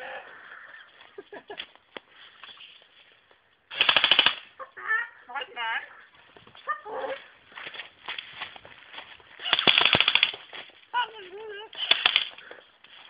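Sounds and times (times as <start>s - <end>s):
airsoft gun full-auto fire: 3.7s - 4.5s, 9.5s - 10.4s, 11.8s - 12.4s.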